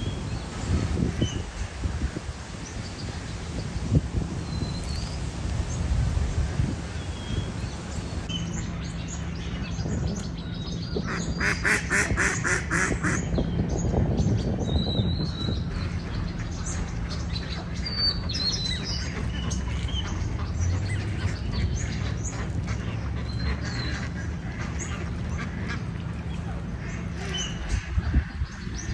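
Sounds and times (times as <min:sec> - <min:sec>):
small birds chirping: 0:00.0 - 0:22.5
ducks quacking: 0:06.0 - 0:08.3, 0:11.0 - 0:13.3, 0:15.6 - 0:28.9.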